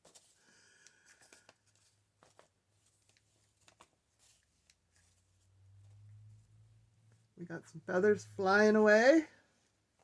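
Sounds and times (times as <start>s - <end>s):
paper ticks and rustles: 0.0s - 5.4s.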